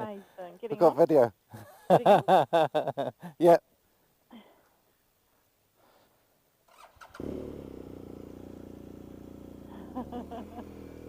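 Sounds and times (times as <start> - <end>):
motorcycle engine idling: 6.7 - 11.0.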